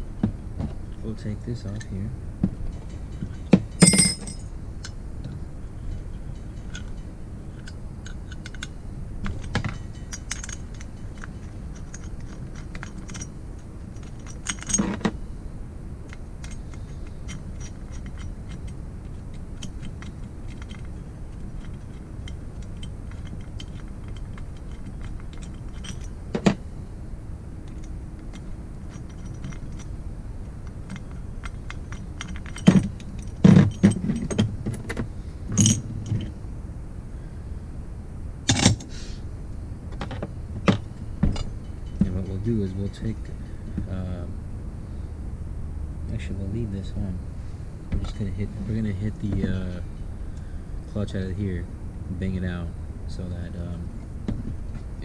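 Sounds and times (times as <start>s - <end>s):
steady low hum: 0.0s - 55.0s
metal tools clinking: 2.7s - 5.0s, 5.8s - 15.1s, 16.1s - 26.6s, 27.6s - 36.3s, 38.5s - 38.9s, 40.0s - 43.4s, 48.0s - 50.1s.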